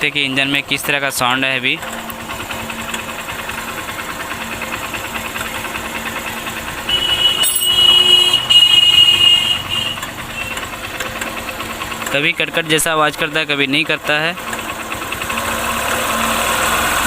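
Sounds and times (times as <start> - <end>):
motorcycle engine idling with rattle: 0.0 - 17.0
loud high whine: 5.8 - 10.0.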